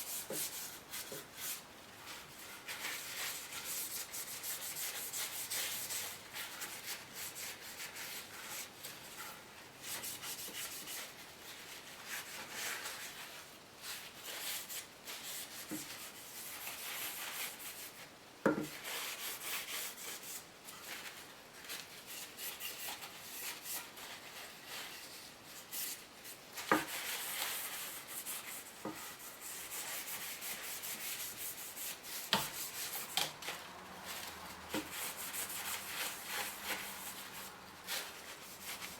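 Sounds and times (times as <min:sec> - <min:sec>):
hand sanding wood: 0:02.2 - 0:08.7, 0:26.6 - 0:38.9.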